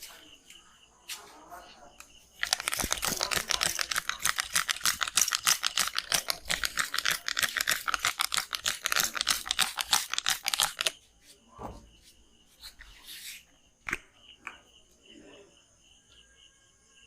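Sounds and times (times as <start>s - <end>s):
hands clapping and slapping massage: 2.4s - 11.0s.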